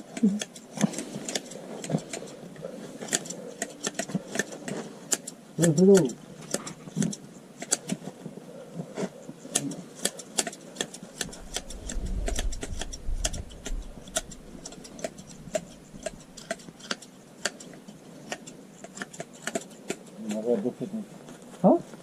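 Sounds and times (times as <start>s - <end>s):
shears snipping fleece: 0.0s - 22.0s
low rumble: 11.3s - 14.7s.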